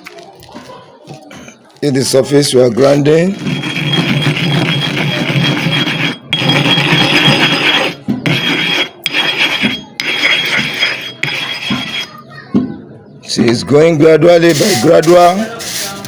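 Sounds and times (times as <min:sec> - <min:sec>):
stone scraping on stone: 0:02.2 - 0:12.3, 0:14.4 - 0:16.0.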